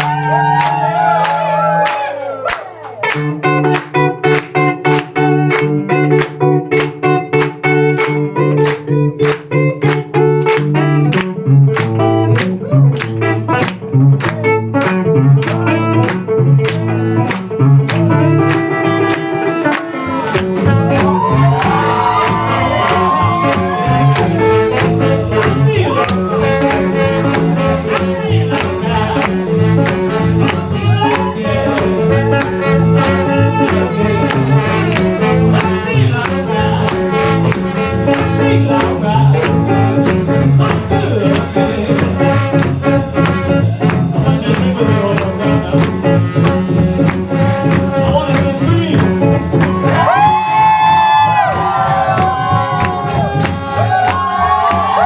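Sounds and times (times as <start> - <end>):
live band playing jazz-blues: 3.0 - 55.0
steady drum beat: 20.4 - 55.0.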